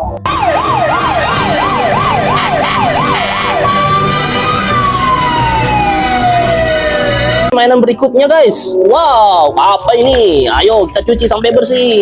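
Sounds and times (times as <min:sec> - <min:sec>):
fire engine siren: 0:00.2 - 0:07.5.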